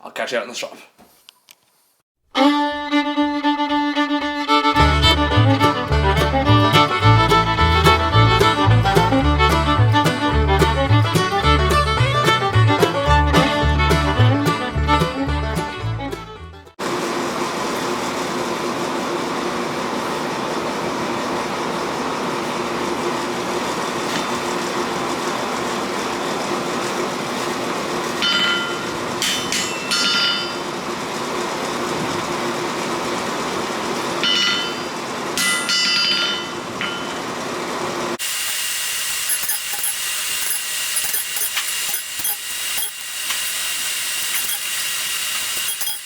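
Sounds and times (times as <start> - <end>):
ringing high grind on steel: 28.2 - 30.8, 34.2 - 37.3, 38.2 - 46.0
electric grinder running: 38.2 - 46.0.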